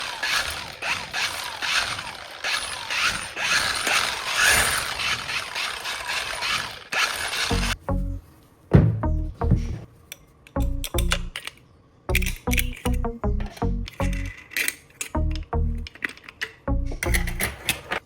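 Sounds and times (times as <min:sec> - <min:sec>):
rhythmic mechanical scraping: 0:00.0 - 0:07.8
low plucked notes: 0:08.8 - 0:09.8, 0:10.6 - 0:11.4, 0:12.1 - 0:14.3, 0:15.2 - 0:15.9, 0:16.7 - 0:17.4.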